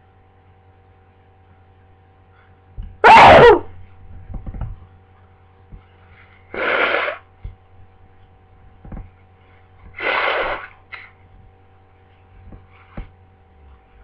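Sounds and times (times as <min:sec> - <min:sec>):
person sneezing: 0:10.0 - 0:10.7.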